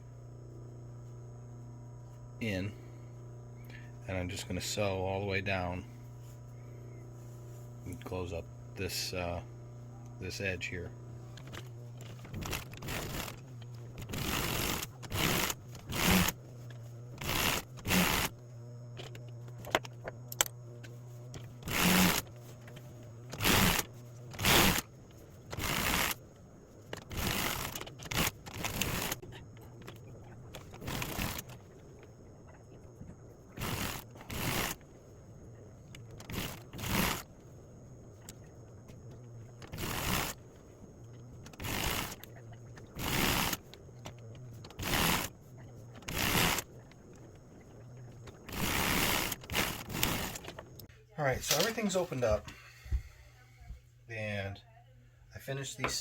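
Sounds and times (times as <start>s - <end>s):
sewing machine stitching: 10.2s - 18.4s, 19.0s - 26.2s, 26.9s - 31.8s, 33.6s - 34.8s, 35.9s - 37.4s, 39.5s - 40.4s, 41.3s - 47.2s, 48.0s - 52.4s.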